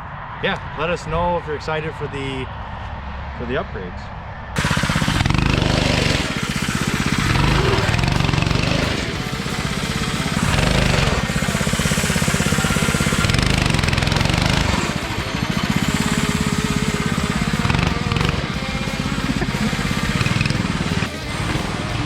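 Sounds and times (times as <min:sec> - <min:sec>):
mini bike engine revving: 0:04.6 - 0:22.0.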